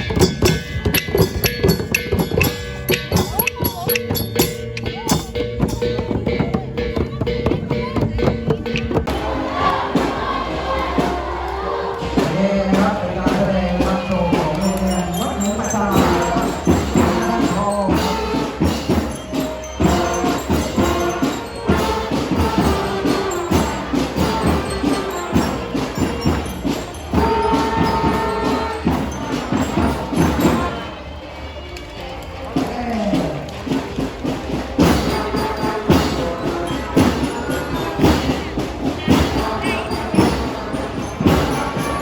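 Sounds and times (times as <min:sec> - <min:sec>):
music with a steady beat: 0:00.0 - 0:31.0, 0:32.4 - 0:42.0
voices: 0:00.0 - 0:42.0.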